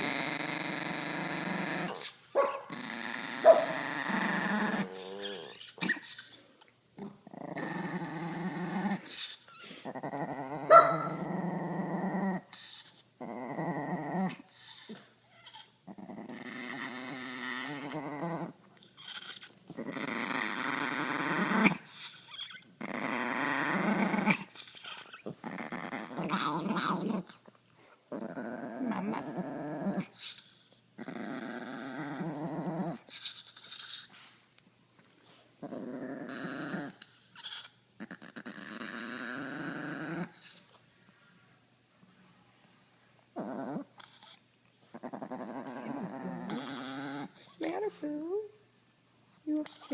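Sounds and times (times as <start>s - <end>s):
dog growling and wheezing: 0.0s - 27.5s, 28.1s - 34.4s, 35.2s - 40.8s, 43.4s - 47.6s.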